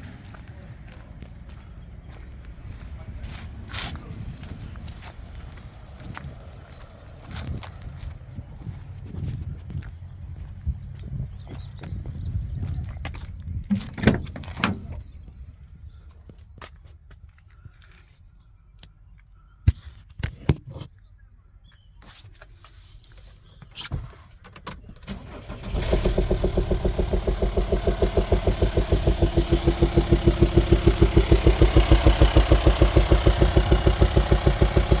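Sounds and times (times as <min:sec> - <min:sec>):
diesel engine starting and idling: 0:25.0 - 0:35.0.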